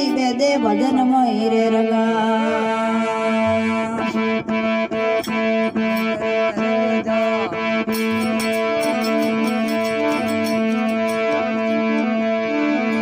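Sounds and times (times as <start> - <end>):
held drone notes: 0.0 - 13.0
instrumental melody: 0.0 - 13.0
quick percussive strokes: 7.2 - 12.0.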